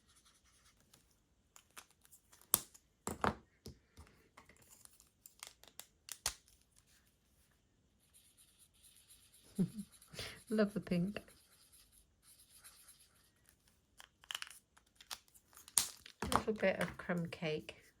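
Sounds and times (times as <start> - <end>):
pens clicking and knocking: 14.0 - 17.3.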